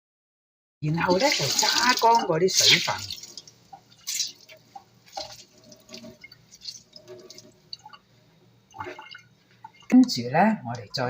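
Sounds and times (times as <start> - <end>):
water dripping and splashing: 1.0 - 8.1, 8.7 - 10.2.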